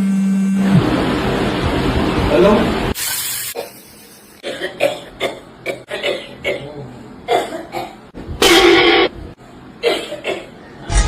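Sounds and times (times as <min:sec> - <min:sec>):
person coughing: 0:04.4 - 0:08.8, 0:09.8 - 0:10.5.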